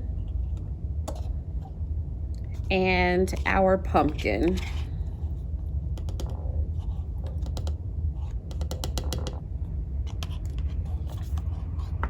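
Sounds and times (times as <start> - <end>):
steady low hum: 0.0 - 12.0
utensil tapping against a mug: 6.0 - 6.4, 8.5 - 9.4.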